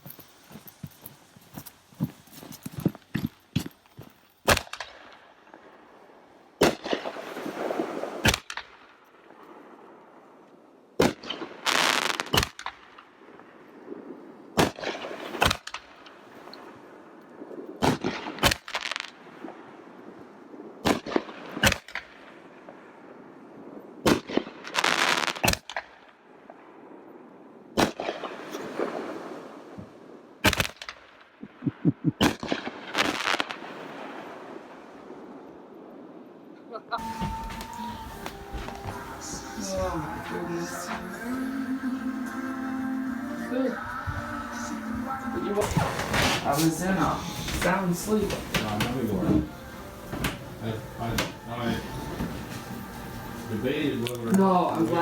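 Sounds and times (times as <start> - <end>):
fireworks crackling: 0.0 - 5.9, 11.0 - 19.7, 24.1 - 26.0, 30.5 - 35.4, 37.0 - 55.0
fireworks bangs: 6.6 - 8.9, 11.0 - 13.0, 24.0 - 25.8, 29.8 - 34.9, 37.0 - 55.0
echo rumble: 31.4 - 32.3.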